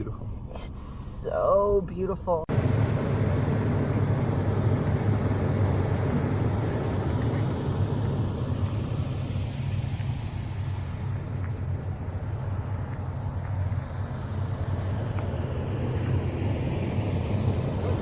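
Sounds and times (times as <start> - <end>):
vehicle driving rumble: 0.0 - 18.0.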